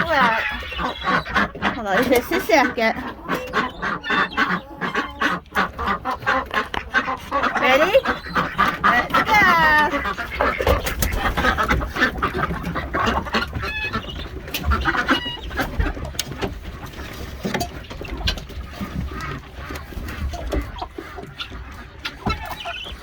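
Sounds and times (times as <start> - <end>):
chickens clucking: 0.0 - 23.0.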